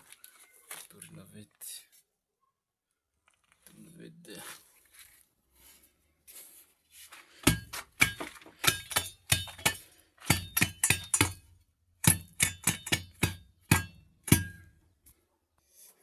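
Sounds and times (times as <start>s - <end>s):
metal hoe striking sandy floor: 7.2s - 15.0s.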